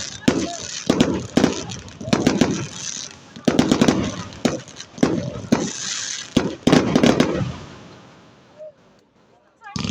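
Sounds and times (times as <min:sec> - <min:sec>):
rifle fire with echoes: 0:00.0 - 0:02.8, 0:03.4 - 0:07.8.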